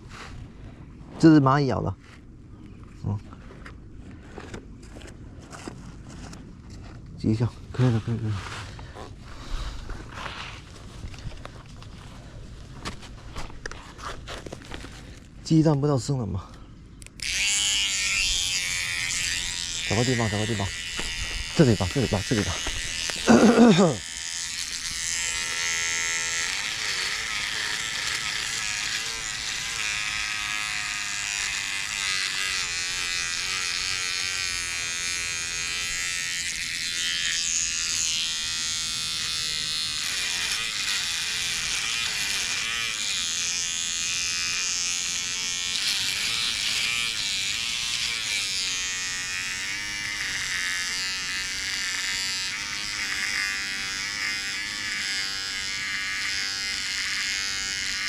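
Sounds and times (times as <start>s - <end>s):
electric beard trimmer buzzing: 17.0s - 58.0s.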